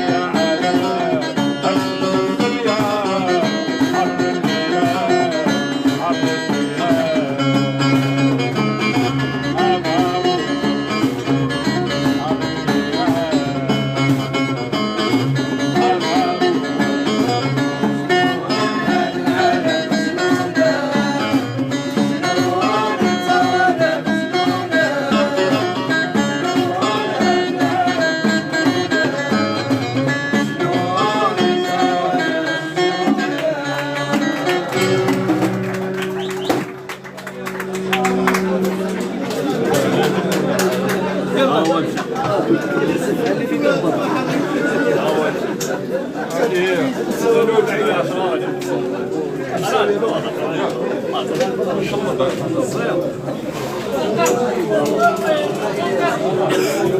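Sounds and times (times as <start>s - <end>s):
person singing: 0.0s - 7.8s, 18.1s - 29.7s, 30.3s - 35.1s
plucked string instruments: 0.0s - 56.9s.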